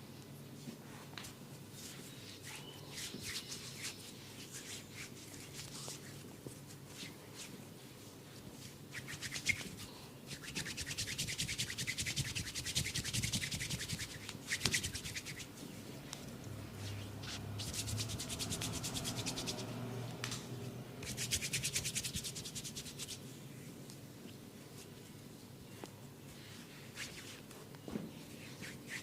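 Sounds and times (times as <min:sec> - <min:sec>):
hands rubbing in massage: 0:00.6 - 0:20.3, 0:21.0 - 0:23.6, 0:26.3 - 0:29.0.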